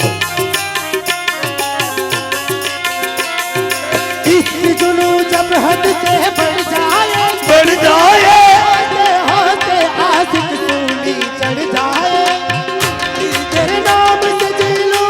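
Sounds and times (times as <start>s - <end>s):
ornamented melody with vibrato: 0.0s - 9.0s
hand drums beating: 0.0s - 15.0s.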